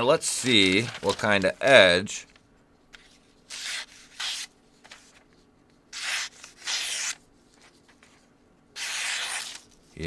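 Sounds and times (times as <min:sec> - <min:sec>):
knife slicing paper: 0:06.0 - 0:07.2, 0:08.8 - 0:09.8.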